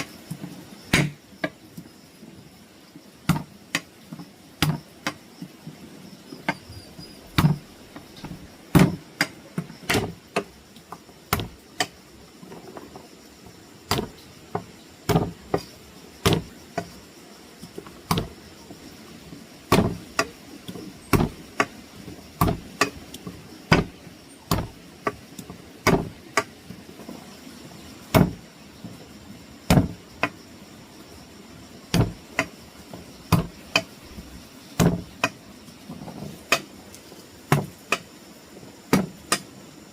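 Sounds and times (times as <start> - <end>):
sharp chopping strikes: 0.9 - 1.2, 4.6 - 5.2, 8.7 - 10.2, 11.3 - 11.9, 13.9 - 14.1, 15.1 - 16.9, 18.1 - 18.3, 19.7 - 20.3, 21.1 - 21.8, 22.4 - 23.0, 23.7 - 23.9, 24.5 - 25.2, 25.8 - 26.5, 28.1 - 28.4, 31.9 - 32.5, 33.3 - 33.9, 34.8 - 35.4.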